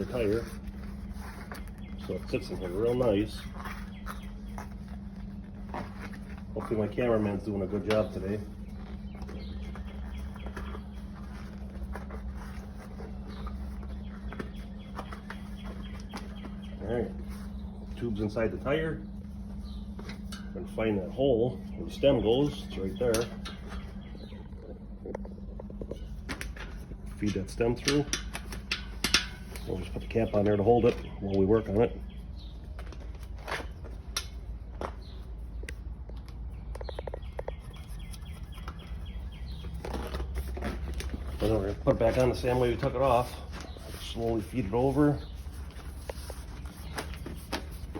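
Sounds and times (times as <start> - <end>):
birds calling: 0.0 - 47.9
steady low hum: 0.0 - 47.9
inner tube clicks and rustles: 22.7 - 31.9.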